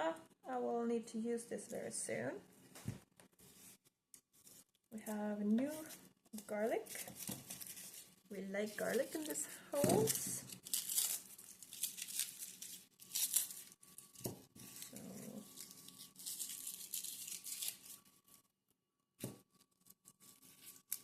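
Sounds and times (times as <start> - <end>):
food packaging crinkling: 3.4 - 18.5, 19.4 - 21.0.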